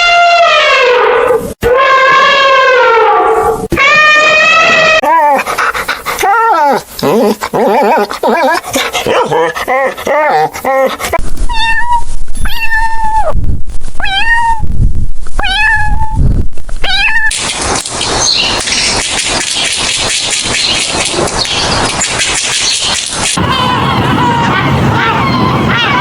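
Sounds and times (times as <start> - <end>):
cat hissing: 3.8 - 12.8
cat meowing: 11.5 - 13.4, 14.0 - 14.8, 15.4 - 16.2, 16.8 - 17.4.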